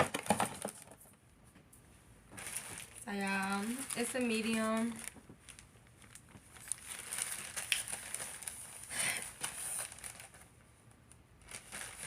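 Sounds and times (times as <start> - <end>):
packaging rustling: 2.3 - 10.6, 11.4 - 12.0.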